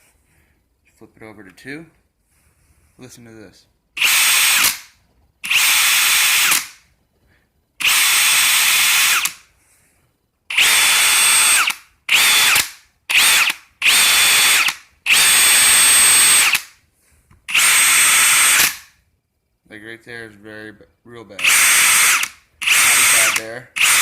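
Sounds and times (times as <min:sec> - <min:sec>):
cordless drill grinding: 0:04.0 - 0:04.8, 0:05.5 - 0:06.7, 0:07.8 - 0:09.4, 0:10.5 - 0:16.7, 0:17.5 - 0:18.9, 0:21.4 - 0:24.0
drill spinning up and down: 0:04.0 - 0:06.8, 0:07.8 - 0:09.5, 0:10.5 - 0:16.7, 0:17.5 - 0:18.9, 0:21.4 - 0:24.0.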